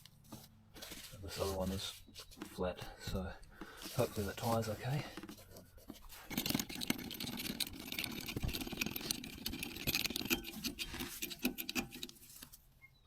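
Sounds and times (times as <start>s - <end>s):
air pump rattling: 3.8s - 12.6s.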